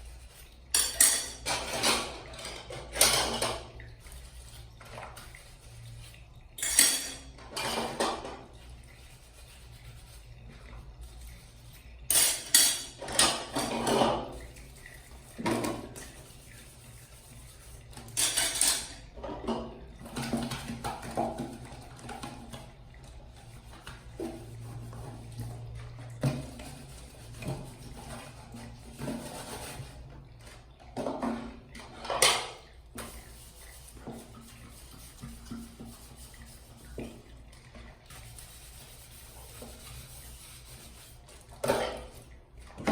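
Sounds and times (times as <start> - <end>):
running water: 0.0 - 42.9
dishes and cutlery clattering: 0.7 - 3.8, 6.6 - 8.5, 12.1 - 14.4, 18.0 - 22.4, 31.0 - 32.6, 41.6 - 42.2.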